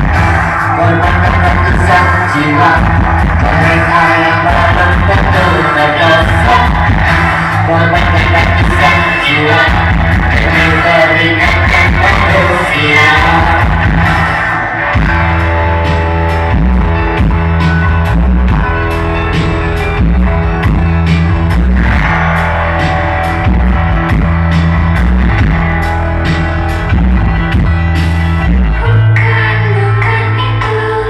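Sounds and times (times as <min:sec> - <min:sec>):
bass guitar: 0:00.0 - 0:31.0
electric guitar chords: 0:00.0 - 0:31.0.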